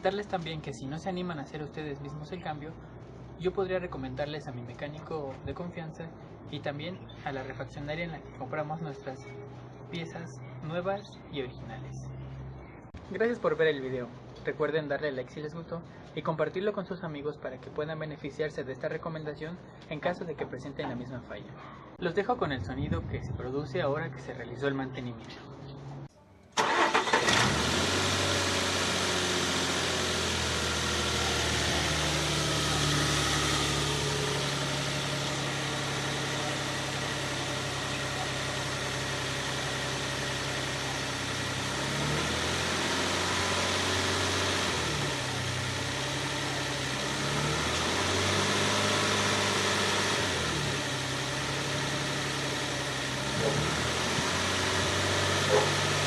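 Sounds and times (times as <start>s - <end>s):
car engine running: 26.6s - 56.0s.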